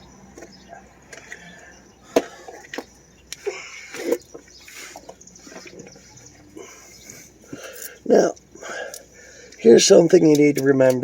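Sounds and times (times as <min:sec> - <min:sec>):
sharp clicks and knocks: 0:10.0 - 0:11.0.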